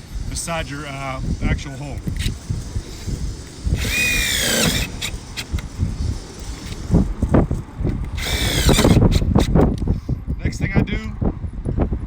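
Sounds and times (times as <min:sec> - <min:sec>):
drill driving a screw into metal: 0:02.0 - 0:07.1, 0:08.0 - 0:09.6.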